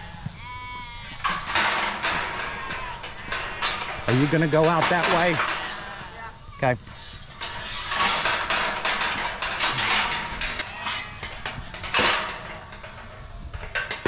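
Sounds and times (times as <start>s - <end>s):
metal clattering and rattling: 1.0s - 14.0s.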